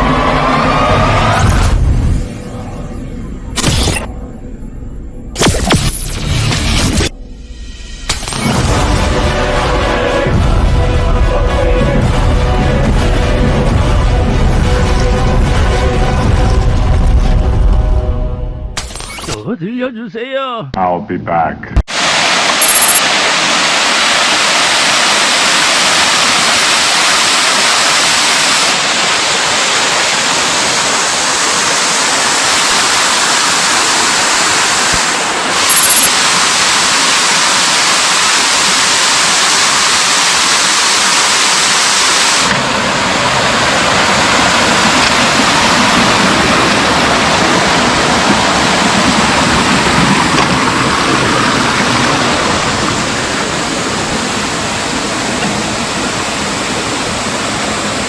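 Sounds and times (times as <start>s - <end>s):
stream water cascading over rocks: 21.9s - 58.0s.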